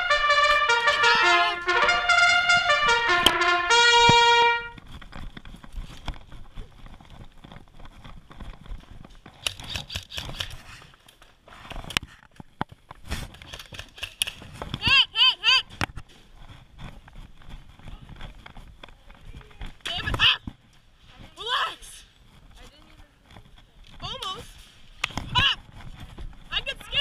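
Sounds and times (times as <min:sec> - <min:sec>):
brass fanfare: 0:00.0 - 0:04.8.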